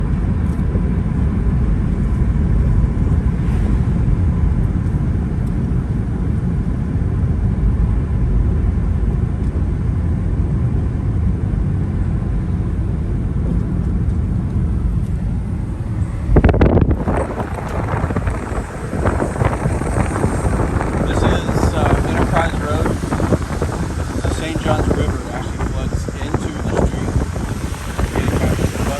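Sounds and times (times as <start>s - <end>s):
car driving rumble: 0.0s - 28.9s
sudden loud rush: 2.3s - 5.4s, 12.8s - 28.9s.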